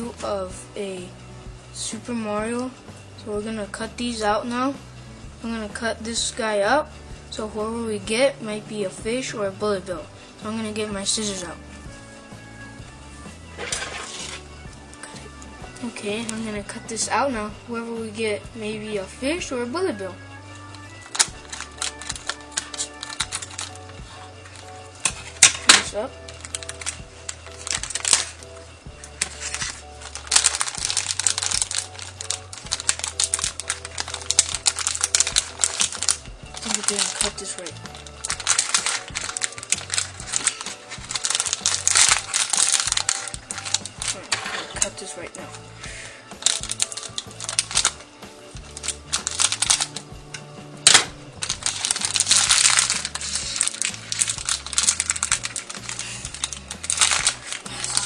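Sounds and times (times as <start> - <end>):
background music: 0.0 - 58.0
scissors cutting plastic: 13.6 - 16.6, 20.5 - 58.0
plastic packet crinkling: 13.6 - 17.0, 20.5 - 58.0.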